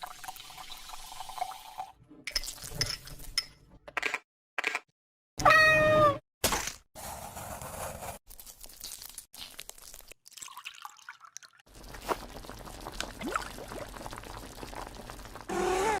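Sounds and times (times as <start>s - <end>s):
liquid dripping and pouring: 0.0s - 3.3s, 8.6s - 15.5s
food crackling and crunching: 8.3s - 10.4s, 11.7s - 15.5s.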